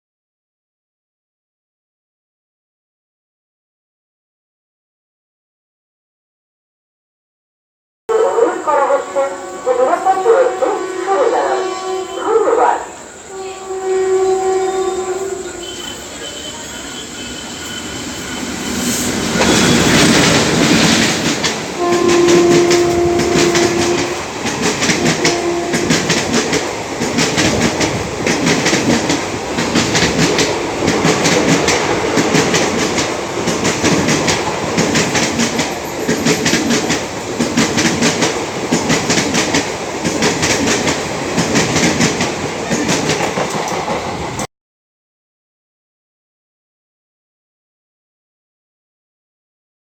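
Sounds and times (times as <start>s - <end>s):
train horn: 8.1s - 18.2s, 21.7s - 26.3s
electric locomotive rushing past: 8.1s - 44.5s
train wheels clattering over rail joints: 19.3s - 44.4s.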